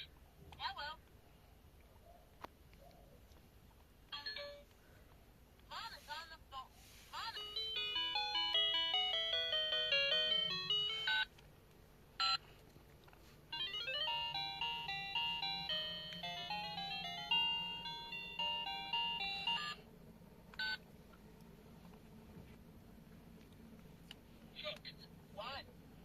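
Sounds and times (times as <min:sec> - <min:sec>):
toy phone electronic tune: 0:07.4 - 0:11.3, 0:13.5 - 0:19.8.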